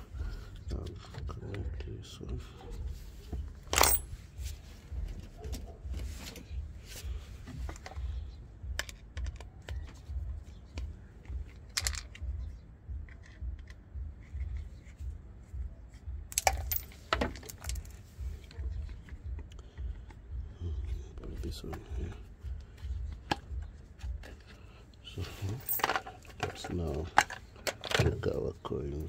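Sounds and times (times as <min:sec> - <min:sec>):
low throbbing hum: 0:02.4 - 0:26.4
metallic clinks of pump parts: 0:03.6 - 0:04.2, 0:16.3 - 0:18.0, 0:25.3 - 0:28.4.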